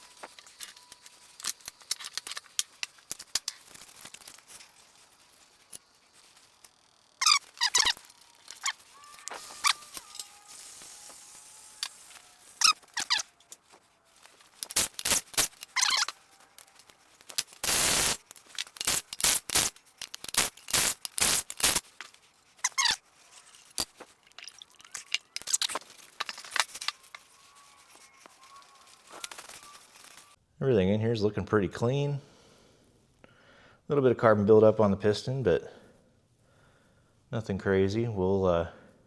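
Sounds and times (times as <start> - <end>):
metallic clanks of tools: 0.0 - 30.3
faint squeaks: 0.0 - 30.4
impact wrench: 1.4 - 13.3, 14.2 - 23.0.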